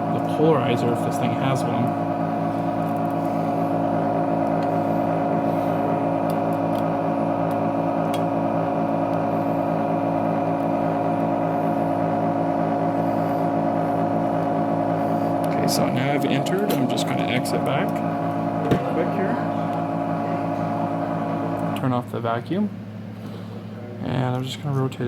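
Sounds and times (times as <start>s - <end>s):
vacuum pump humming: 0.0s - 23.9s.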